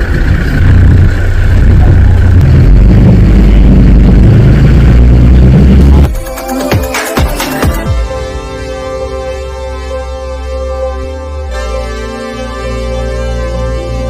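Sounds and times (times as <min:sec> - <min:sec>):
boat engine running: 0:00.0 - 0:14.0.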